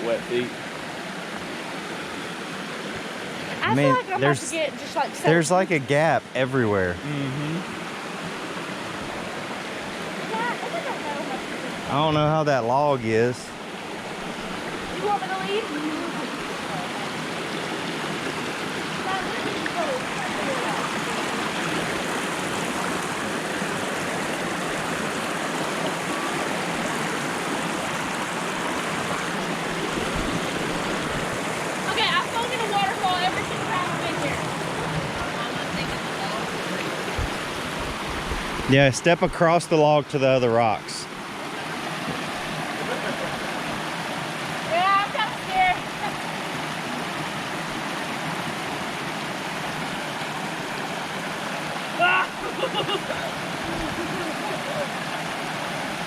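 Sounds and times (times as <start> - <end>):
water rushing over rocks: 0.0 - 56.0.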